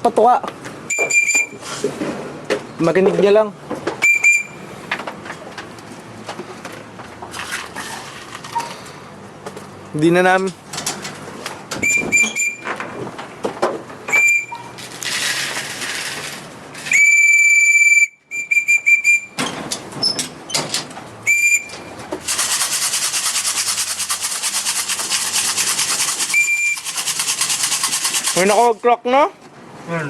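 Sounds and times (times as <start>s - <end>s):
whistle blasts: 0.9s - 1.6s, 4.0s - 4.6s, 11.8s - 12.6s, 14.1s - 14.7s, 16.8s - 19.4s, 21.2s - 21.9s, 26.3s - 26.9s
rhythmic rasping noise: 22.2s - 28.7s.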